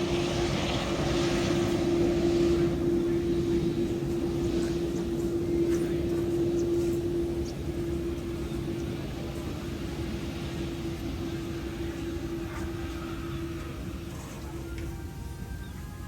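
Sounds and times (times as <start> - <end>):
jet engines rumbling: 0.0 - 16.0.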